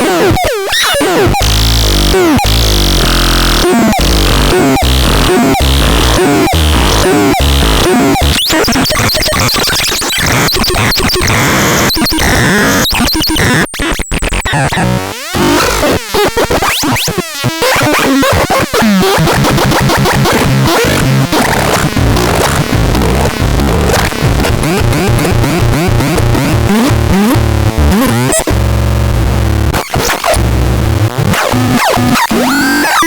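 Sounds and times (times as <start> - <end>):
loud electronic tones: 0.3 - 13.7, 19.2 - 29.6, 31.8 - 33.0.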